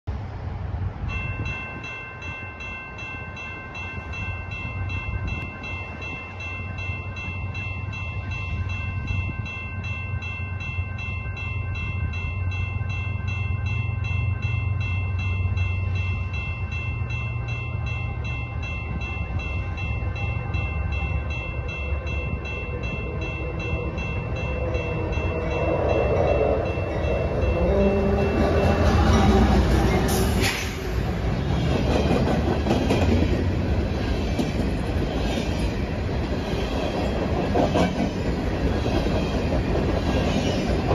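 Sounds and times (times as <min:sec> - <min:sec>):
ringing bell strikes: 0:01.1 - 0:29.4.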